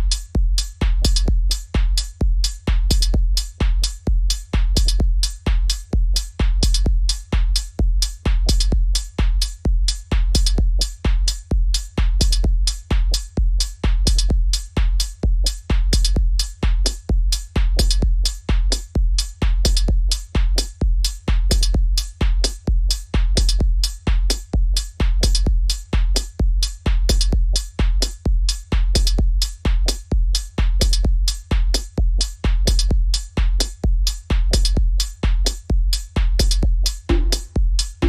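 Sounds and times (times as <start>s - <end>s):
drum-machine kick: 0.0s - 38.0s
hi-hat and noise hits: 0.0s - 38.0s.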